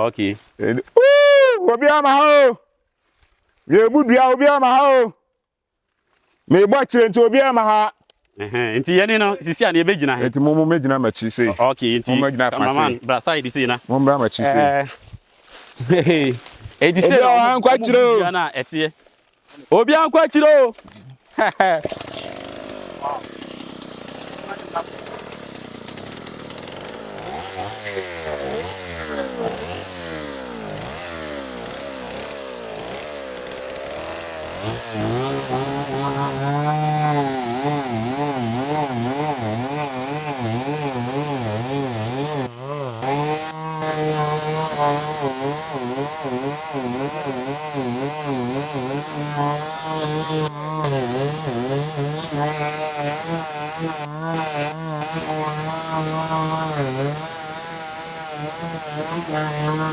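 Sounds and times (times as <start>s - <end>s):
chainsaw running: 21.2s - 59.9s.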